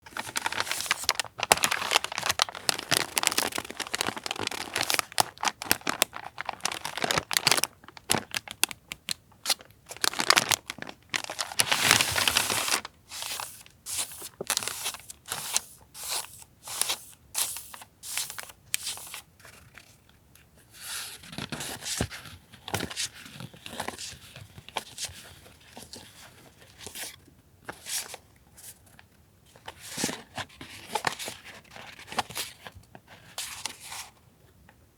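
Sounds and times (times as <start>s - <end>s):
paper crinkling and tearing: 0.1s - 8.8s, 9.4s - 19.7s.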